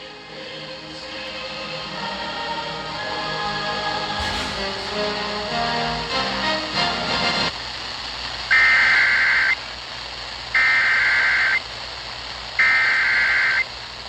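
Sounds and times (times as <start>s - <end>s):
broadcast music: 0.0s - 7.5s
shrill digital data tones: 8.5s - 9.7s, 10.6s - 11.7s, 12.6s - 13.7s.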